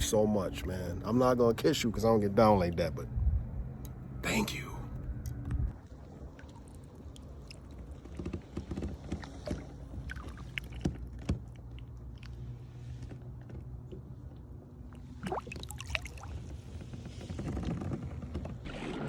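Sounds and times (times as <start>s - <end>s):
knocks and handling clatter: 7.8s - 10.1s.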